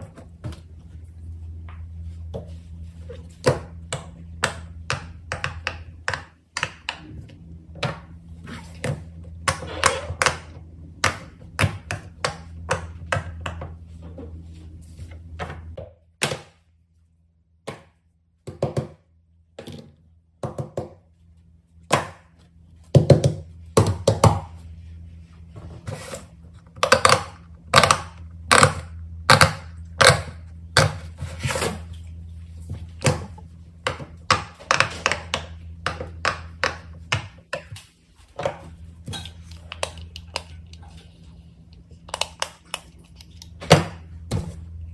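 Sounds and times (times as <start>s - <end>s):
steady low hum: 0.0s - 44.9s
plastic toys tapping and clicking: 3.4s - 7.1s, 33.0s - 37.8s.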